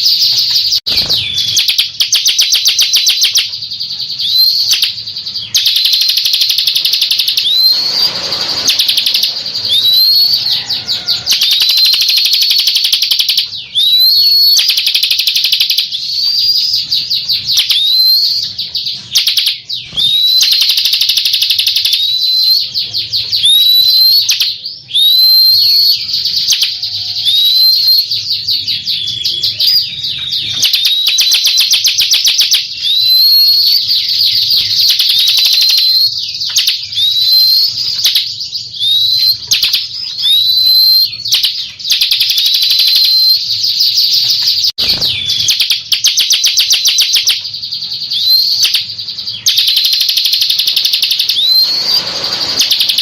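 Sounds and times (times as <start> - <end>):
bird buzzy trills: 0.0 - 53.0
bird short rising note: 51.3 - 53.0.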